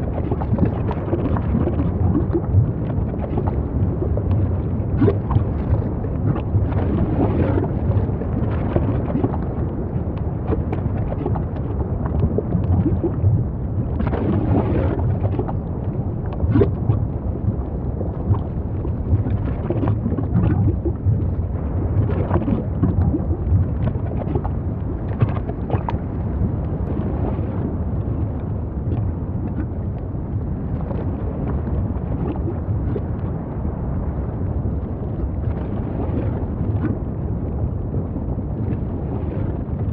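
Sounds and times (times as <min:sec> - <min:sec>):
crackles and pops: 0:00.0 - 0:39.9
deep volcanic rumble: 0:00.0 - 0:39.9.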